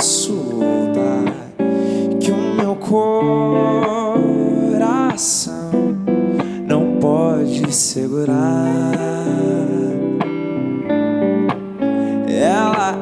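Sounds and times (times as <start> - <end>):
man singing with vibrato: 0.0 - 11.2, 11.8 - 13.0
pop-rock band playing: 0.0 - 13.0.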